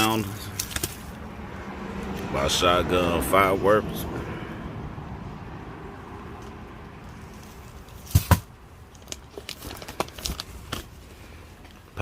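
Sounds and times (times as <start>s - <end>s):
packaging clicks and rustles: 0.5s - 1.2s, 8.1s - 11.9s
sharp knocks on packaging: 8.0s - 8.5s.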